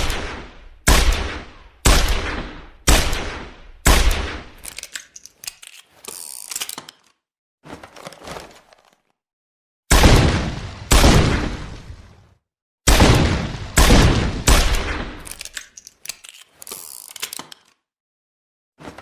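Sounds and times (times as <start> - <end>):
revolver gunshots: 0.0 - 4.6, 9.9 - 11.8, 12.9 - 15.3
metallic clicks and rattling: 4.6 - 7.2, 15.2 - 17.8.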